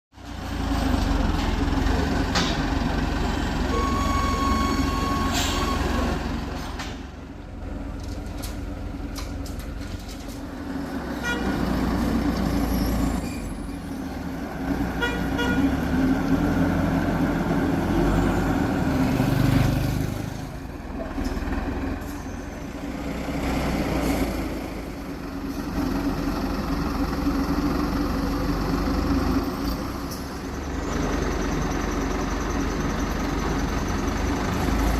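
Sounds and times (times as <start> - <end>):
excavator diesel engine running: 0.2 - 34.9
brief steady tone: 3.7 - 6.2.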